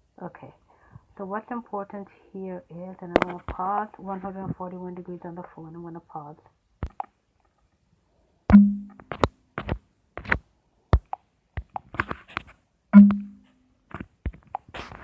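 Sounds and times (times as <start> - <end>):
ringing thumps: 8.5 - 9.1, 13.0 - 13.4.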